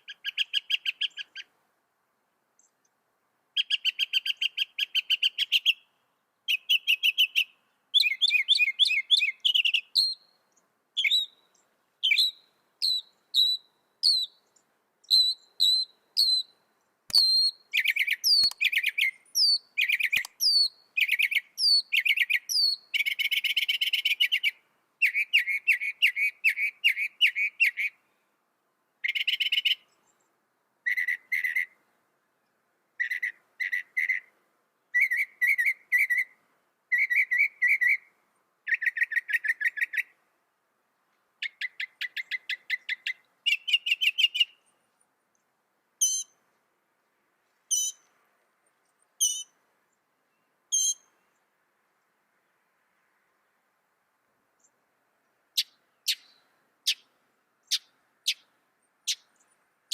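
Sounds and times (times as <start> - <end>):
mockingbird singing: 6.5 - 10.3, 11.0 - 28.0, 35.0 - 36.3, 41.4 - 44.6, 46.0 - 46.3, 47.7 - 48.0, 49.2 - 49.5, 50.7 - 51.1, 55.6 - 58.5.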